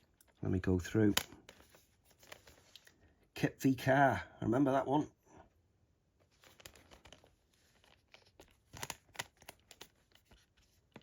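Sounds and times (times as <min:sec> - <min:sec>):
plastic case clicks and crinkling: 0:06.4 - 0:11.0.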